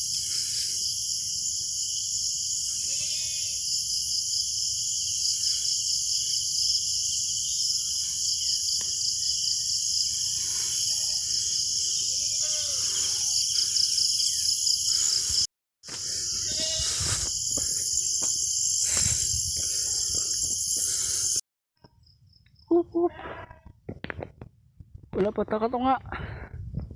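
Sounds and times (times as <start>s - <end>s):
insects buzzing trill: 0.0s - 21.4s.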